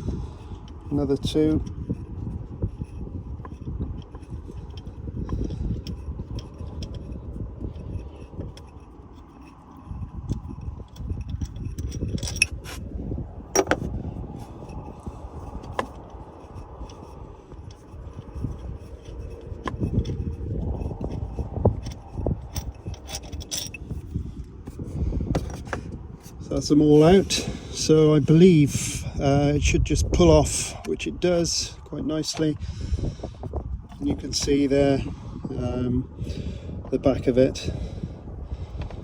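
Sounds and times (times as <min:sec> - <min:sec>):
low handling rumble: 0:00.0 - 0:39.0
metal tools and bolts clinking: 0:02.7 - 0:12.9, 0:13.5 - 0:29.1.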